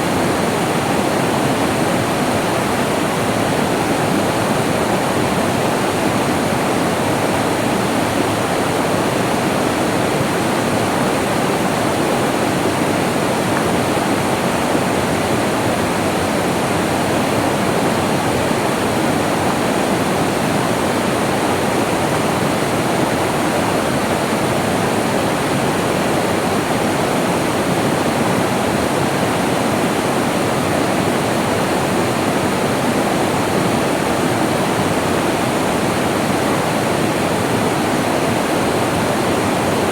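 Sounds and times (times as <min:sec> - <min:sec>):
water rushing: 0:00.0 - 0:39.9.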